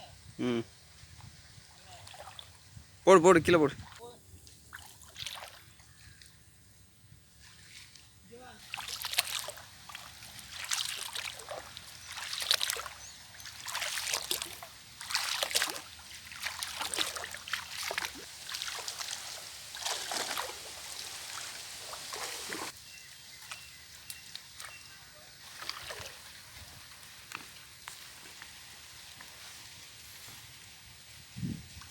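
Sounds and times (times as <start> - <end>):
water splashing and sloshing: 1.8 - 2.7, 3.6 - 6.3, 8.6 - 31.1
water dripping: 8.6 - 22.8.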